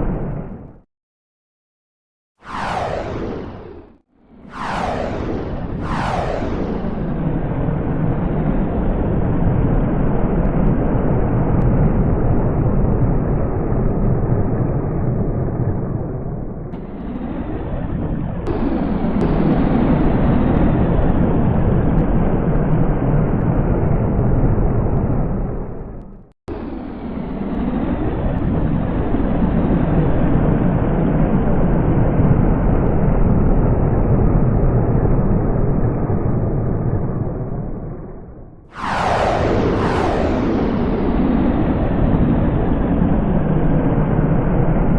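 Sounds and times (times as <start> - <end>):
jet aircraft flyby whoosh: 2.4 - 11.2, 14.0 - 22.4, 35.9 - 44.9
jet engine rumble: 2.4 - 44.9.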